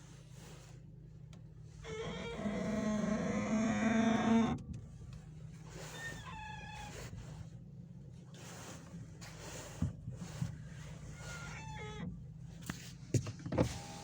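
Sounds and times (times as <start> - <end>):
car squeak: 1.7 - 4.6, 5.7 - 7.4, 10.9 - 12.2.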